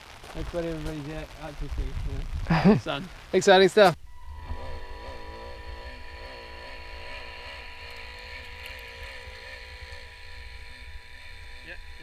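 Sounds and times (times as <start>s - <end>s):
wind rumbling on microphone: 0.0s - 3.4s
motor droning with wavering pitch: 4.0s - 12.0s.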